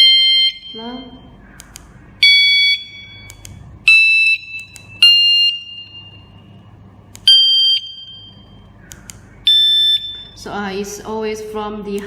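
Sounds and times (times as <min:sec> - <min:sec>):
alarm unit electronic tones: 0:00.0 - 0:01.4, 0:02.2 - 0:08.7, 0:09.4 - 0:10.5.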